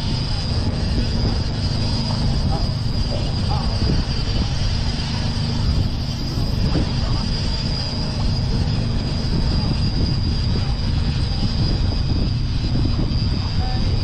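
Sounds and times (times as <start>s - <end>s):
boat motor running: 0.0s - 14.0s
thin high whine: 0.0s - 14.0s
wind: 0.0s - 14.0s.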